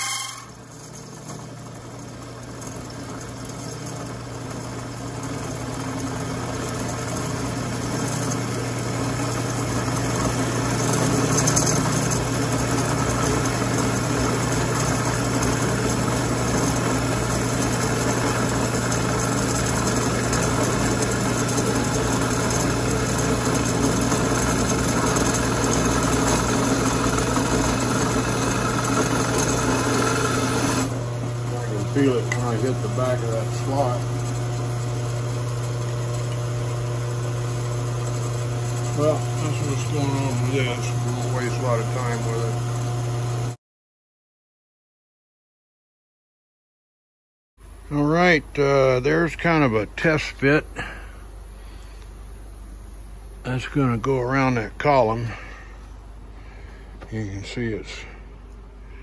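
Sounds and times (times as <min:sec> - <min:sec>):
end mill cutting metal: 0:00.0 - 0:43.4
drill press motor hum: 0:00.0 - 0:43.6.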